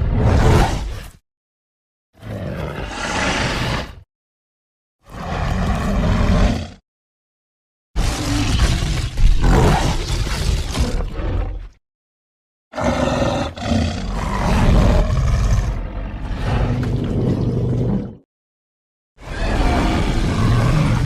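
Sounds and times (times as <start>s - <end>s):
dinosaur roar: 2.2s - 4.0s, 5.0s - 6.8s, 8.0s - 11.8s, 12.7s - 18.2s, 19.2s - 21.0s.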